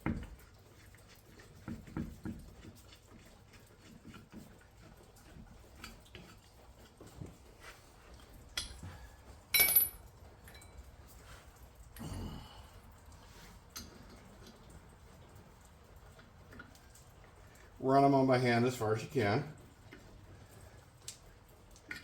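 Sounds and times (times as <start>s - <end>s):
metal parts knocking and clicking: 9.5s - 10.6s
ringing metallic clank: 9.6s - 10.7s.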